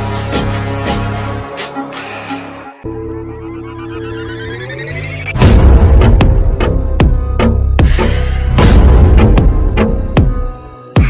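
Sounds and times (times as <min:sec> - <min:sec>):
tone sweeping upward: 0:02.8 - 0:05.4.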